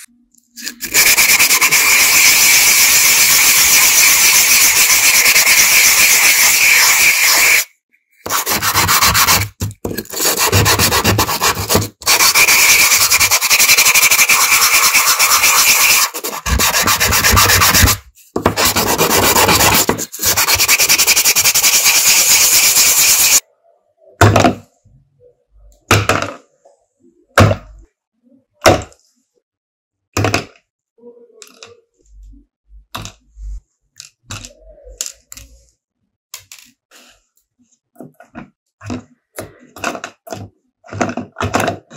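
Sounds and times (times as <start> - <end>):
sanding metal rasp: 0.8 - 7.7, 8.3 - 23.4.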